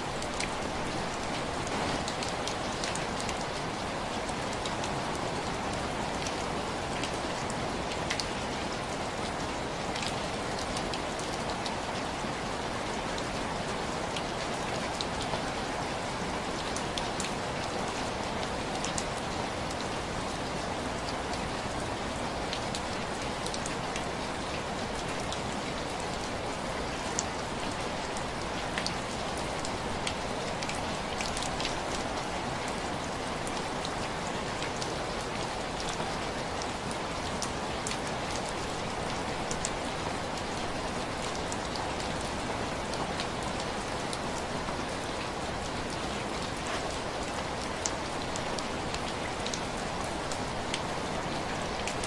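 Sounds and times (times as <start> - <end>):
heavy rain: 0.0 - 52.0.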